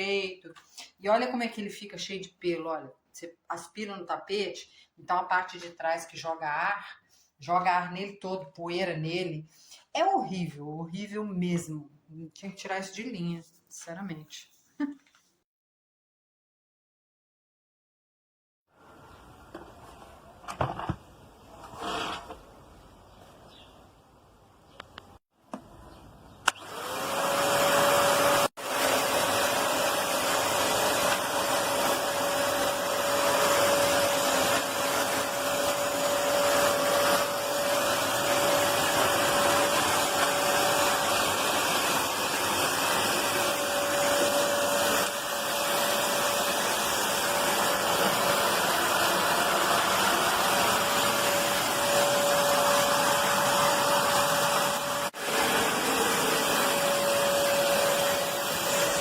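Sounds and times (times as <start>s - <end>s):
vacuum cleaner whine and air rush: 26.5s - 59.0s.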